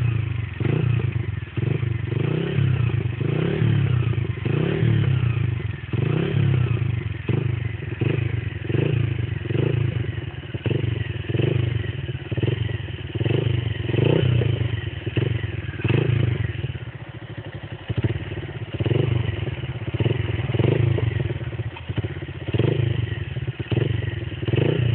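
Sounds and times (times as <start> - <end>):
motorcycle engine revving: 0.0 - 24.9.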